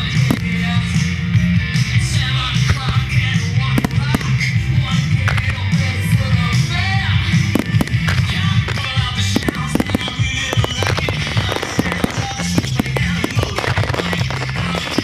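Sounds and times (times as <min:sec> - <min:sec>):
fireworks bursting and crackling: 0:00.0 - 0:15.0
rock music: 0:00.0 - 0:15.0.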